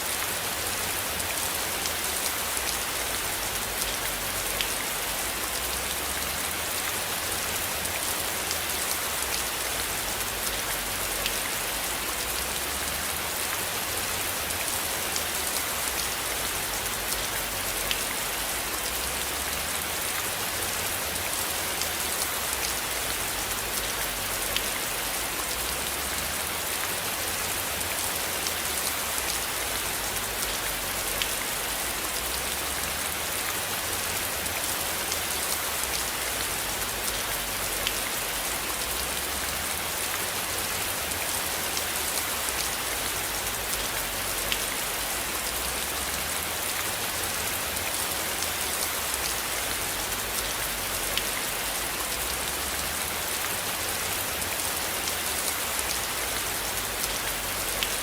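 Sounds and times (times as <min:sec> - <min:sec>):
steady rain: 0:00.0 - 0:58.0.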